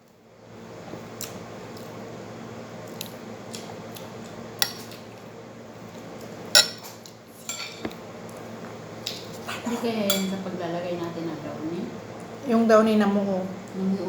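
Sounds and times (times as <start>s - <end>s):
low background hum: 0.0s - 14.0s
cutlery clinking on plates: 6.6s - 8.0s, 10.0s - 10.4s.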